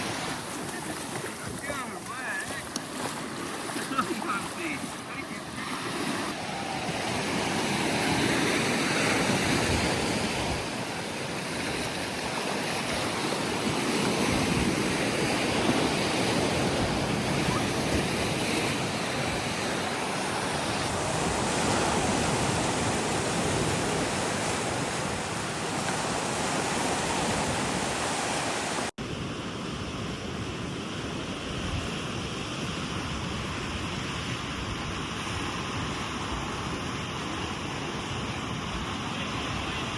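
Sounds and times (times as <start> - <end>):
ocean surf breaking on beach: 0.0 - 39.9
wind on microphone: 4.8 - 29.4.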